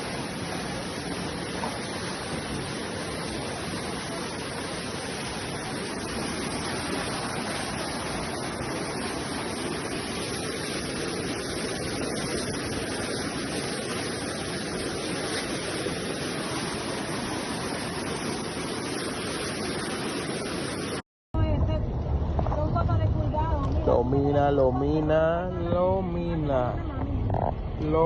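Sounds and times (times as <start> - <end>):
river rushing: 0.0 - 21.0.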